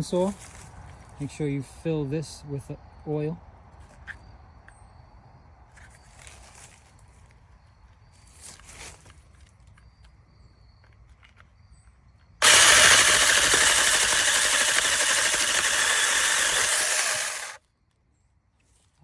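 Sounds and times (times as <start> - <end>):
mini chainsaw buzzing: 12.4 - 17.6.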